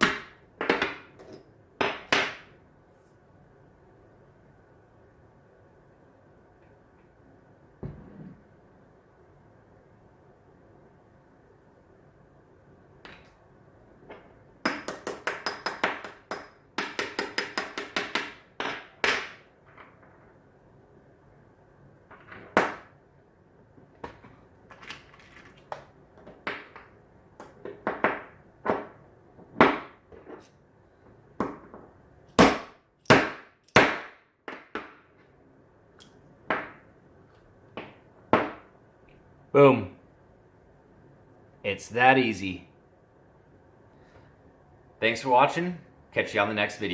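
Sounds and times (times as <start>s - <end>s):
hammer tapping on metal die: 14.6s - 19.3s.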